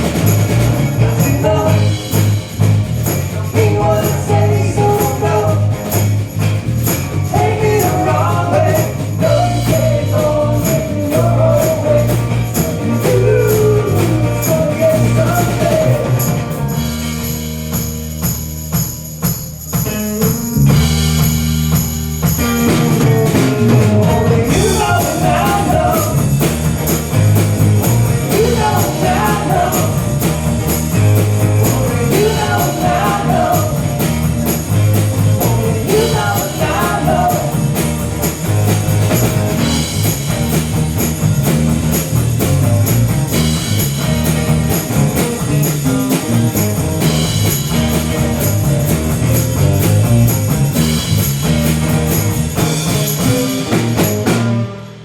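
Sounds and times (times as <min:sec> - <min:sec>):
rock band playing: 0:00.0 - 0:55.0
lead vocal singing: 0:00.1 - 0:16.8, 0:23.0 - 0:39.9.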